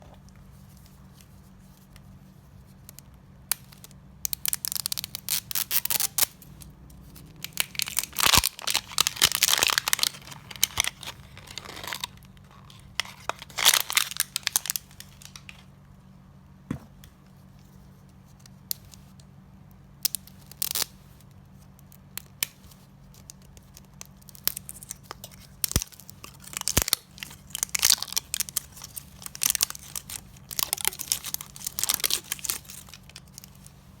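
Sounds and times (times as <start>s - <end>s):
packaging tearing and rustling: 4.4s - 6.3s, 7.1s - 15.7s, 23.2s - 33.8s.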